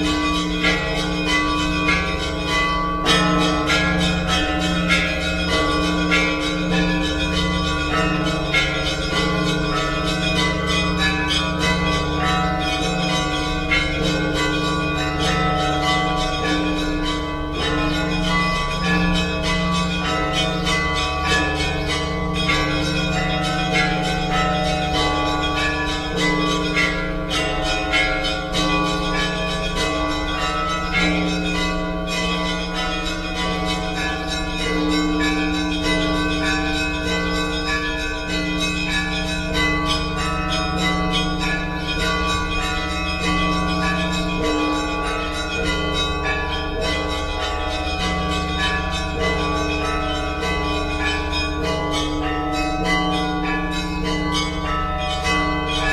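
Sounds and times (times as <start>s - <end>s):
church bells ringing: 0.0s - 55.9s.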